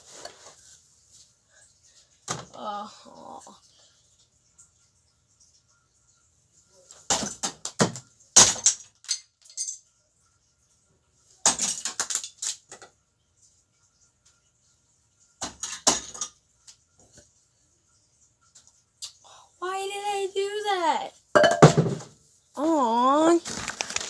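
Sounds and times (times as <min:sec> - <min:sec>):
plastic bricks crashing and clattering: 0:07.1 - 0:09.7, 0:11.4 - 0:12.8, 0:21.5 - 0:22.2, 0:23.3 - 0:24.0.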